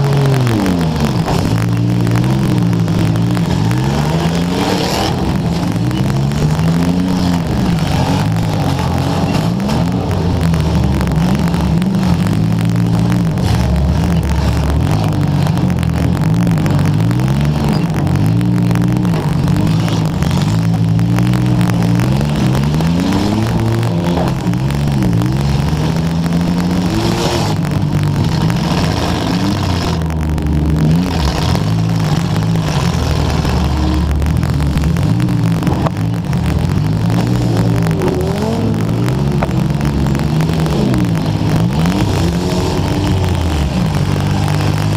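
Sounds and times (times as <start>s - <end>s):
car engines revving: 0.0s - 44.9s
microphone static crackle: 0.0s - 44.9s.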